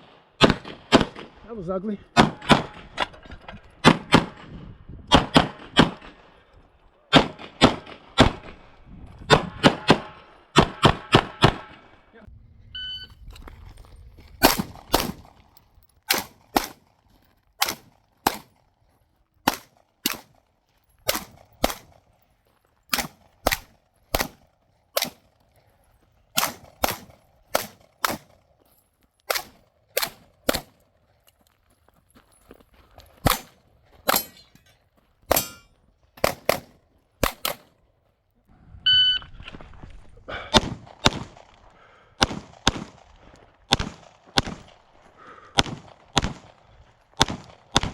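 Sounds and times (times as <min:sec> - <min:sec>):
pistol shots: 0:02.1 - 0:03.1, 0:05.1 - 0:06.2, 0:07.1 - 0:08.6, 0:09.3 - 0:11.8, 0:14.4 - 0:15.3, 0:16.1 - 0:16.9, 0:17.6 - 0:18.6, 0:19.4 - 0:20.4, 0:21.0 - 0:22.0, 0:22.9 - 0:24.4, 0:25.0 - 0:25.3, 0:26.3 - 0:28.4, 0:29.3 - 0:30.8, 0:33.2 - 0:34.4, 0:35.3 - 0:35.6, 0:36.2 - 0:37.7, 0:40.5 - 0:44.8, 0:45.5 - 0:47.9
shot timer beep: 0:12.7 - 0:13.2, 0:38.9 - 0:39.3.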